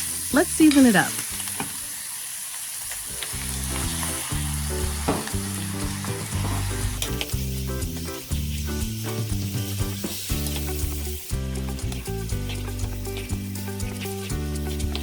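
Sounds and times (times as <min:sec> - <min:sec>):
meat sizzling in a pan: 0:00.0 - 0:15.0
background music with low notes: 0:03.1 - 0:15.0.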